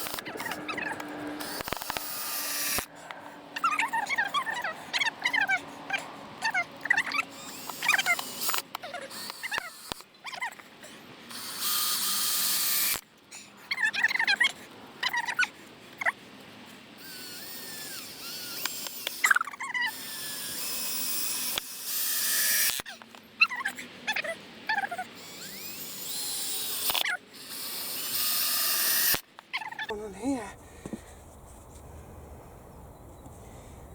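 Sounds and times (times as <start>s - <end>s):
cordless drill driving screws: 0.0s - 2.9s, 7.0s - 10.1s, 11.3s - 13.0s, 17.0s - 22.9s, 25.2s - 29.2s.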